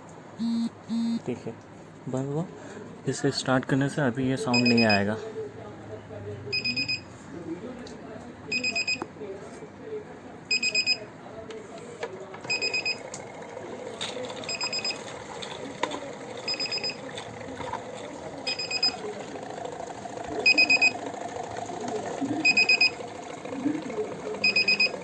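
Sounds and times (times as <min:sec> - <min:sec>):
water purifier high beeps: 0:00.4 - 0:01.3, 0:04.5 - 0:05.1, 0:06.5 - 0:07.1, 0:08.5 - 0:09.0, 0:10.5 - 0:11.1, 0:12.4 - 0:25.0.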